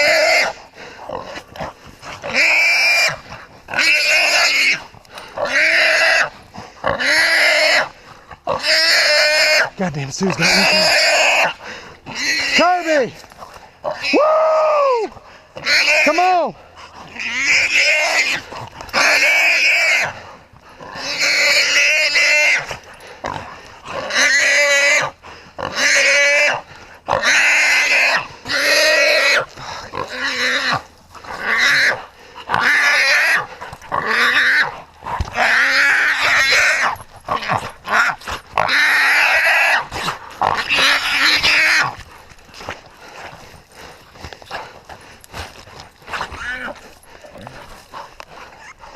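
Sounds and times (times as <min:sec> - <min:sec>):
hog squealing loudly: 0:10.4 - 0:11.5, 0:40.6 - 0:41.9.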